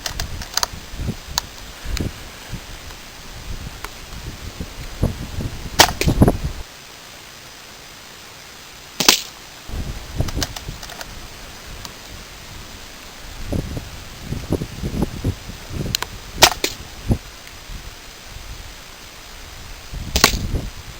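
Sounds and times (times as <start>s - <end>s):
handling noise: 0.0s - 6.6s, 9.0s - 17.2s
air rifle shot: 5.8s - 6.2s.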